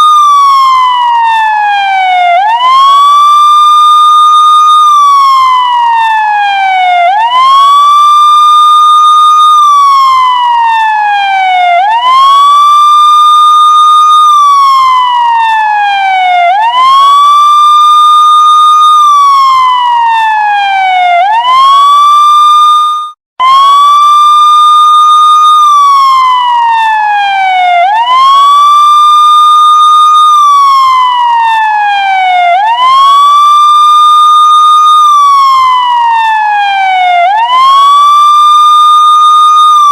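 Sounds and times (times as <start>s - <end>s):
police siren wailing: 0.0s - 39.9s.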